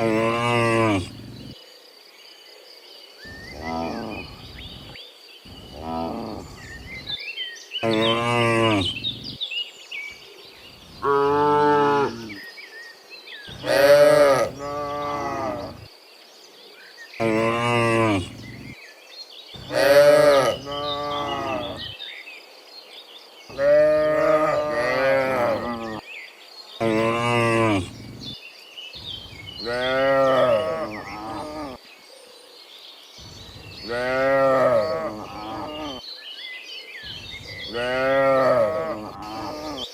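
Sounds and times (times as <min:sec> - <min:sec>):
cattle mooing: 0:00.0 - 0:01.6, 0:03.5 - 0:04.5, 0:07.8 - 0:09.4, 0:11.0 - 0:12.4, 0:13.5 - 0:15.8, 0:17.2 - 0:18.8, 0:19.6 - 0:21.9, 0:23.5 - 0:26.0, 0:26.8 - 0:28.4, 0:29.6 - 0:31.8, 0:33.8 - 0:36.0, 0:37.7 - 0:39.8.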